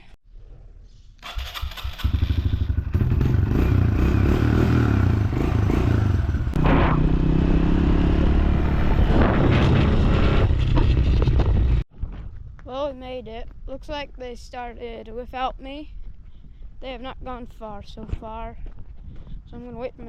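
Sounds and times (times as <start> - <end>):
rattling and clatter: 9.3 - 11.8.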